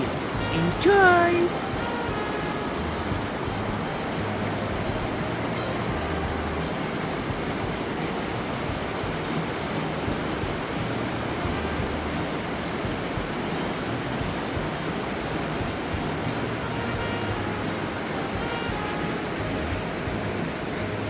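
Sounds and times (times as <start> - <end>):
waterfall rushing: 0.0 - 21.0.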